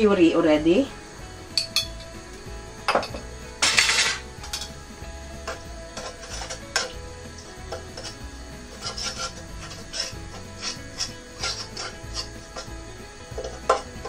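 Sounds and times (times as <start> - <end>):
faint background music: 0.0 - 14.0
utensils clinking on cookware: 1.6 - 2.2, 2.9 - 4.8, 5.4 - 14.0.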